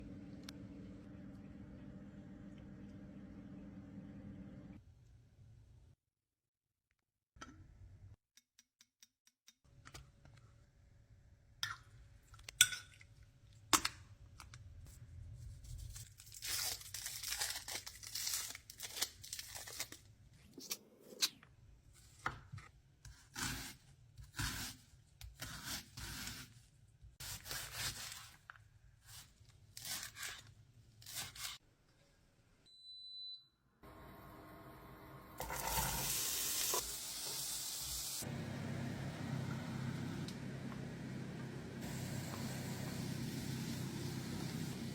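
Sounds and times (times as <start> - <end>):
food sizzling in a pan: 35.4 - 38.3, 41.8 - 44.9.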